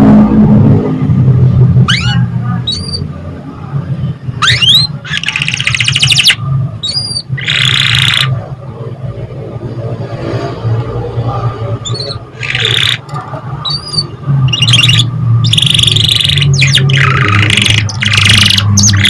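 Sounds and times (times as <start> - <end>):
canary singing trills: 1.8 - 3.2, 4.4 - 8.4, 11.8 - 19.0.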